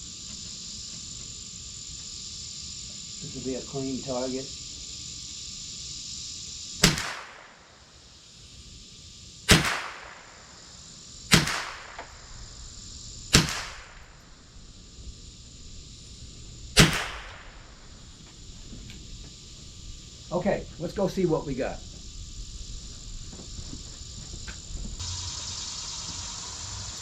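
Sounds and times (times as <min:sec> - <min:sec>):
rifle shots cracking: 0:06.8 - 0:07.7, 0:09.5 - 0:10.5, 0:11.3 - 0:12.3, 0:13.3 - 0:14.2, 0:16.8 - 0:17.8.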